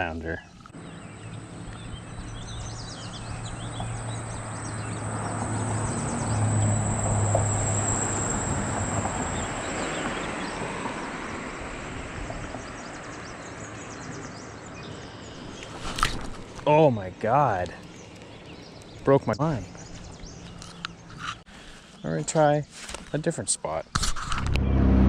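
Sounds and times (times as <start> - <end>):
vehicle passing by: 0.8 - 14.1, 24.4 - 25.0.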